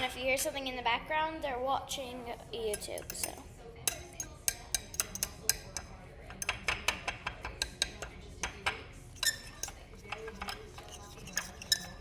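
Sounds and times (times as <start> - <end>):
utensil scraping a mixing bowl: 2.7 - 12.0.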